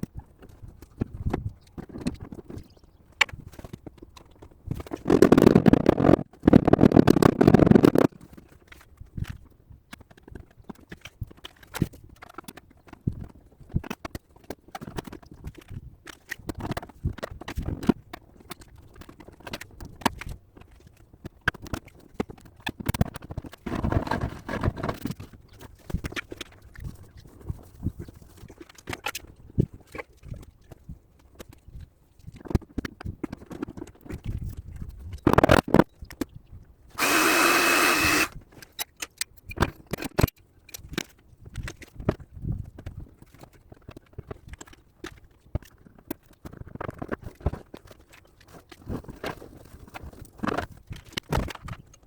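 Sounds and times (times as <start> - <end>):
rough noisy grinding: 37.0 - 38.3.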